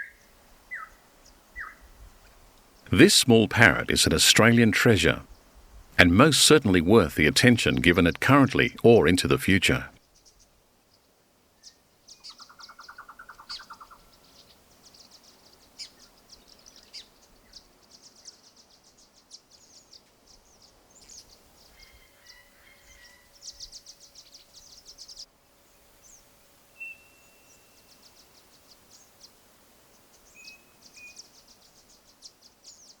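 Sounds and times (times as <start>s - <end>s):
small birds chirping and trilling: 0.0s - 2.1s, 10.0s - 33.0s.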